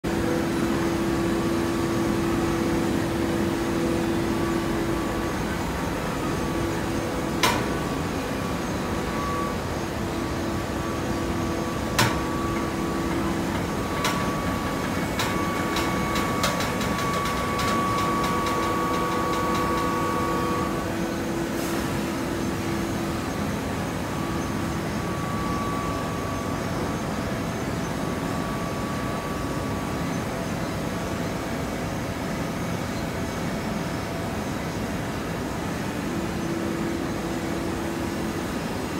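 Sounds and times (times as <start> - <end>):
hydraulic baler droning: 0.1 - 27.0.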